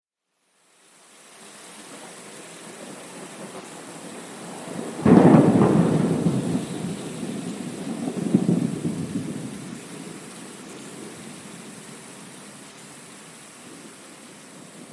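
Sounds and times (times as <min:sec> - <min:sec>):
steady rain: 0:00.4 - 0:14.9
thunder crack and rumble: 0:04.5 - 0:10.3.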